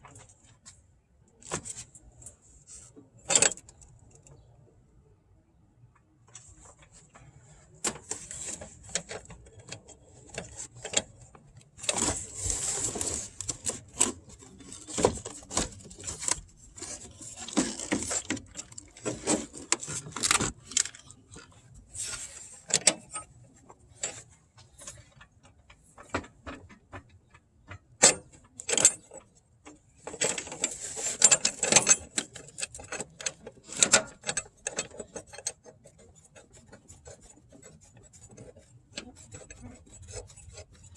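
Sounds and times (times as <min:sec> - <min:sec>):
quick scraping and rattling: 0:08.0 - 0:23.1.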